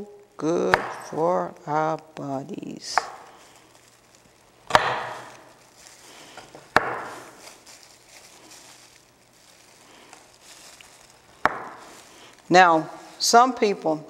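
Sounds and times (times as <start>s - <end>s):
knife chopping carrot on board: 0.7s - 1.1s, 3.0s - 3.3s, 4.7s - 5.4s, 6.7s - 7.2s, 11.4s - 11.9s.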